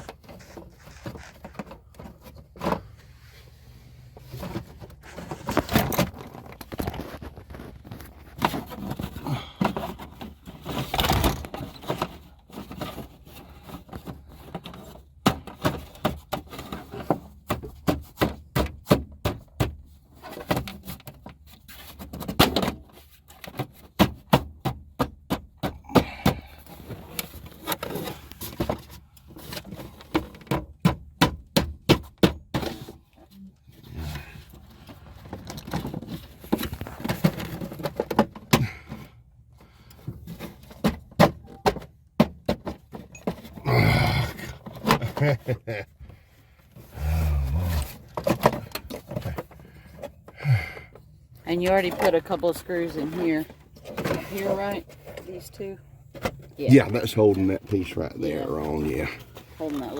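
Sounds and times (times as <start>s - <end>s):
tools scraping and knocking: 47.6s - 57.2s.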